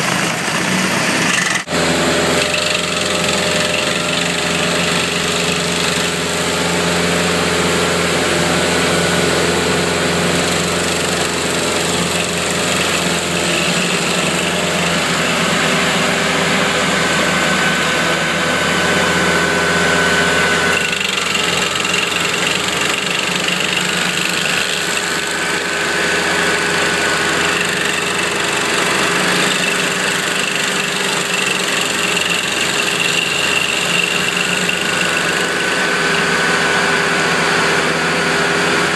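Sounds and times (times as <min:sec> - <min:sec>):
stump grinder running: 0:00.0 - 0:38.9.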